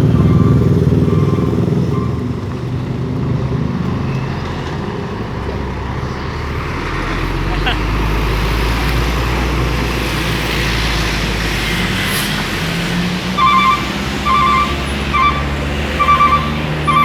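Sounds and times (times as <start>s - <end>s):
truck engine running: 0.0s - 17.0s
truck horn toots: 13.4s - 17.0s.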